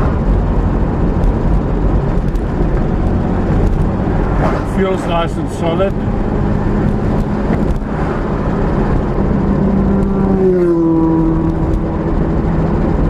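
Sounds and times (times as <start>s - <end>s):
car engine running: 0.0s - 13.0s
tyre and road noise: 0.0s - 13.0s.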